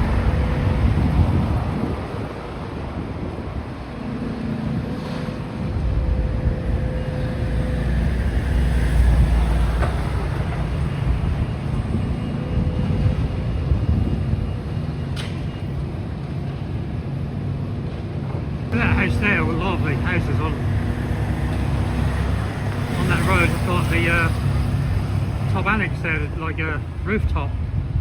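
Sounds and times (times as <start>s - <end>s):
wind buffeting microphone: 0.0s - 28.0s
excavator diesel engine running: 18.4s - 27.6s.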